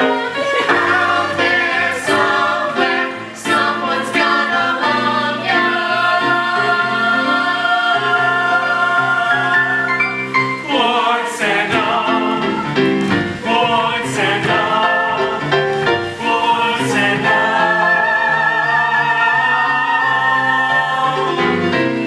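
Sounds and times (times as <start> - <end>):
instrumental accompaniment: 0.0 - 10.7
voices singing with vibrato: 0.0 - 22.0.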